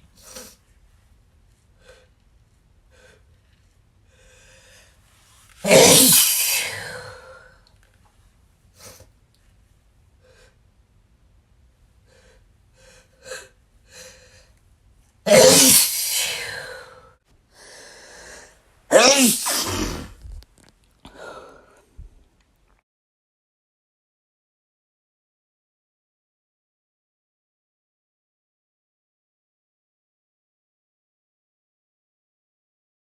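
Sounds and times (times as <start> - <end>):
person sneezing: 5.6 - 7.4, 15.3 - 17.1, 18.9 - 20.3.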